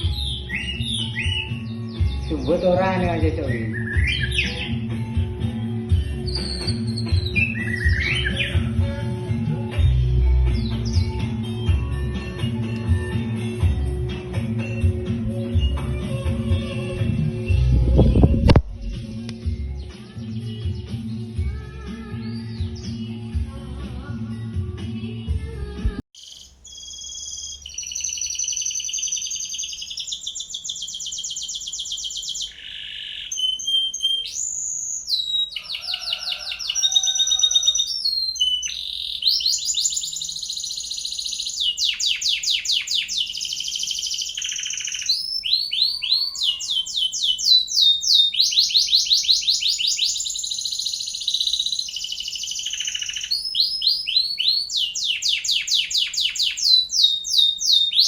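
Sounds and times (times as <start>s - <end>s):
songbird singing trills: 0.0s - 5.0s, 5.8s - 9.0s, 9.7s - 13.2s, 26.2s - 58.0s.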